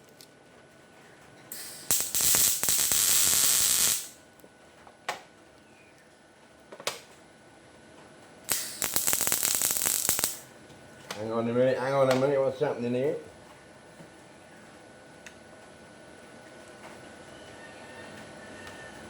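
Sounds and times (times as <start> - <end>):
crackling sizzling welding arc: 1.5 - 4.2, 8.4 - 10.6.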